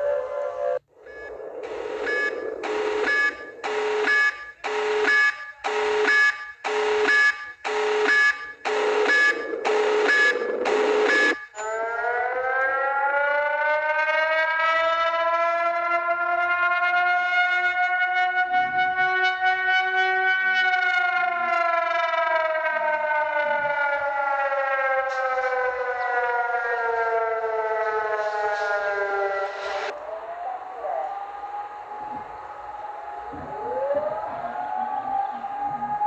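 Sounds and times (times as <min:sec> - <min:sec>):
outdoor warning siren winding up: 0:00.0 - 0:36.0
pulsing buzzing alert alarm: 0:00.6 - 0:12.4.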